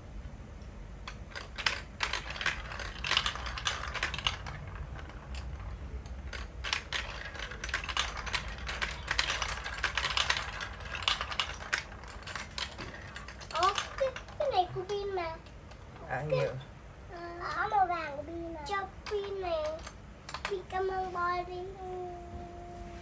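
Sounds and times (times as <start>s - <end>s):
marbles clattering down plastic tracks: 1.1s - 15.1s.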